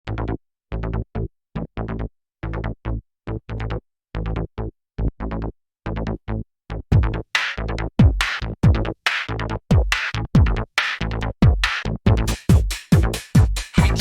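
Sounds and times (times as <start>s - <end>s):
staccato synth and drum machine hits: 6.9s - 14.0s.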